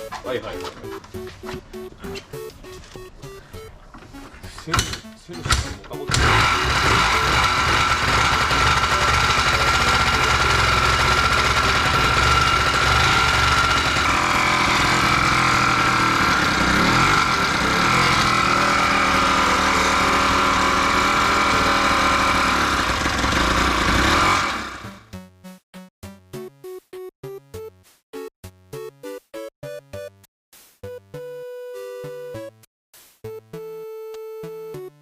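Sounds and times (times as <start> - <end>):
rhythmic background music: 0.0 - 6.2
atv engine knocking: 6.1 - 24.8.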